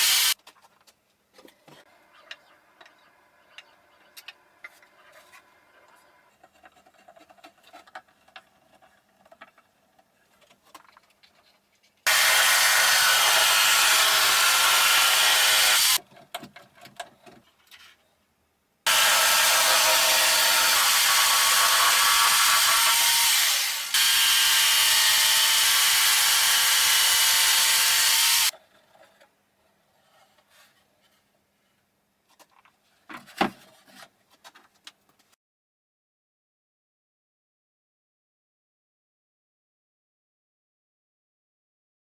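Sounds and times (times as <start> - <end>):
electric jigsaw sawing wood: 0.0 - 0.4, 12.1 - 16.0, 18.9 - 28.5.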